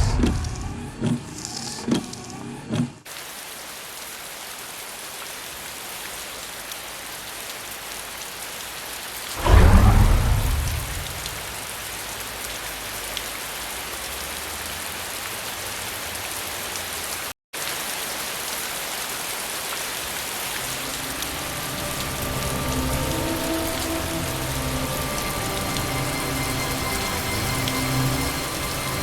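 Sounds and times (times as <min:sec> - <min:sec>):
steady rain falling: 0:00.0 - 0:00.8, 0:03.1 - 0:29.0
thunderclap: 0:00.0 - 0:01.2, 0:09.4 - 0:11.8.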